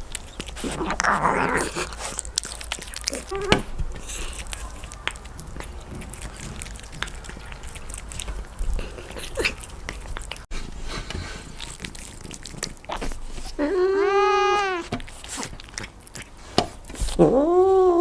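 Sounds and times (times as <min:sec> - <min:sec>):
cat chewing: 0:00.0 - 0:17.6
cat meowing: 0:13.6 - 0:14.9.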